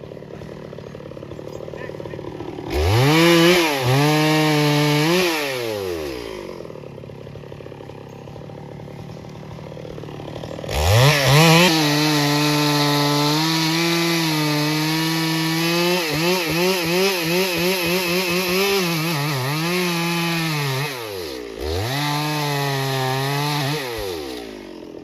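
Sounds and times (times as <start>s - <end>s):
chainsaw revving and idling: 0.0s - 25.0s.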